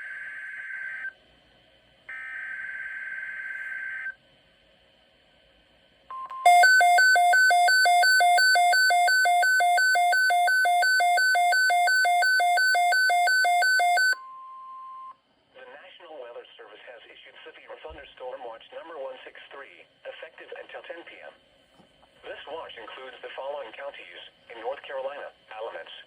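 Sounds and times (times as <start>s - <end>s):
alternating two-pitch alarm beeps: 6.1s - 15.2s
steady warning tone: 6.1s - 15.2s.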